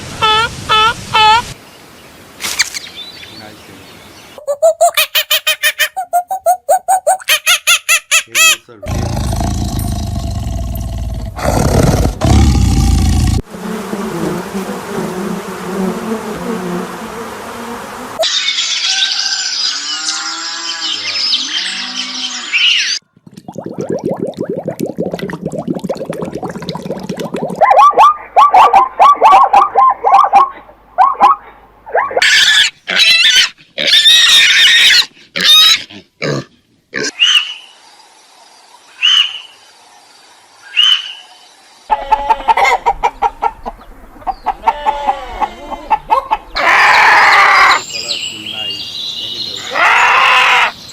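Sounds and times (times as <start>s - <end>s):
deep animal roar: 8.8s - 13.5s
insect buzz: 9.1s - 22.6s
animal squealing cries: 18.2s - 23.0s, 32.2s - 35.9s, 44.6s - 46.0s, 46.6s - 47.8s, 49.6s - 50.8s.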